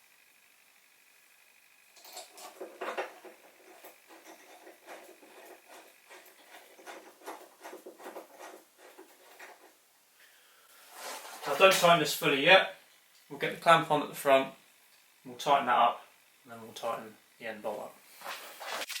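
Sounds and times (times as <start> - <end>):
metal parts clicking and tapping: 2.0 - 9.7.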